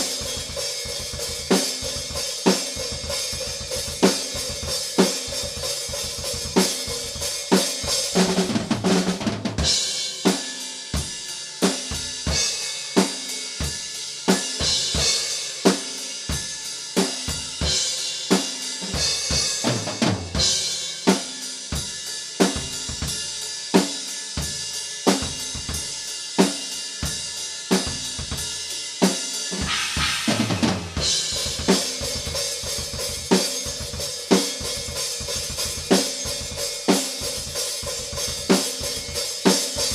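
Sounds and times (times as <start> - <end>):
hi-hat and crash cymbals: 0.0 - 39.9
snare drum hits: 29.6 - 31.0
tom fills: 29.6 - 31.4
bass drum: 29.6 - 33.0.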